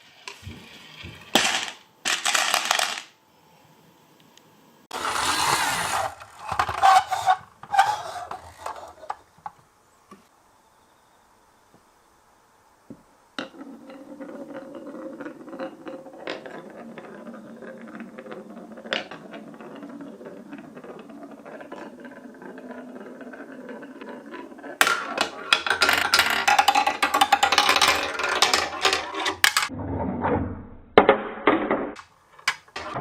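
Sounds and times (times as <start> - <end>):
marbles rolling along a track: 1.2 - 3.2, 4.9 - 9.2, 13.4 - 29.7
glass marbles clattering: 24.8 - 29.7.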